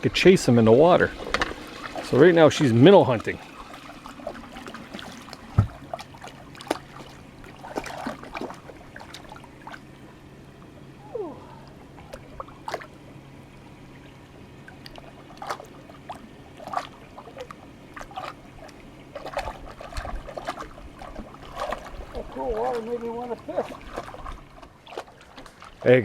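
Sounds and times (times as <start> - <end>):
faint low hum: 0.0 - 26.0
water trickling and splashing: 0.0 - 26.0
thump: 5.6 - 5.8.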